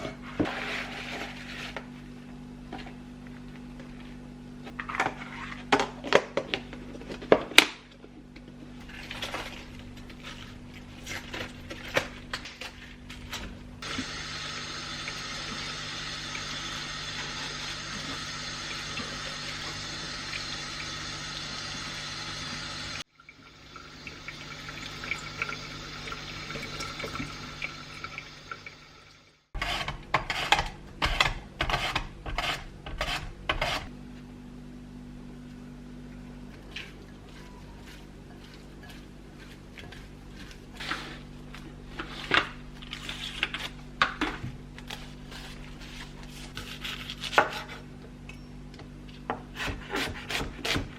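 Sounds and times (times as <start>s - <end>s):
tap water running: 13.8s - 29.5s.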